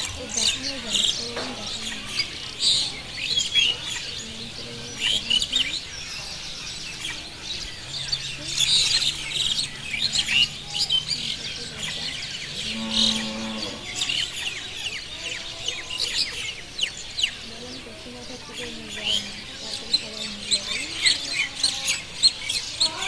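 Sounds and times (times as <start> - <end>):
small birds chirping and twittering: 0.0 - 23.0.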